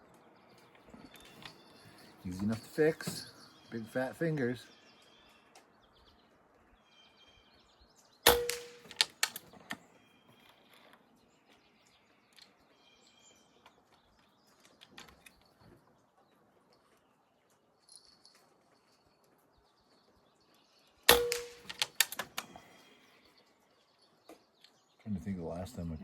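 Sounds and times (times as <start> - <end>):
birds chirping: 0.0 - 26.0
air rifle shot: 8.3 - 9.4, 21.1 - 22.1
quick clicks: 8.3 - 9.8, 21.1 - 22.6.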